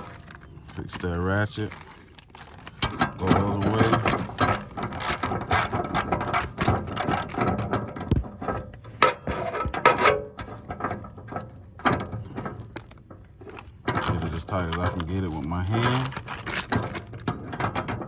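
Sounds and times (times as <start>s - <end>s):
socket ratchet clicking: 2.8s - 7.4s.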